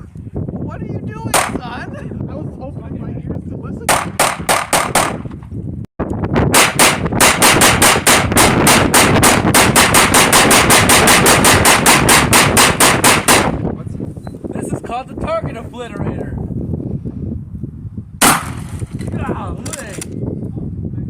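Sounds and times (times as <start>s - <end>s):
rapid gunfire: 3.9s - 5.2s, 6.5s - 13.6s, 18.2s - 18.8s.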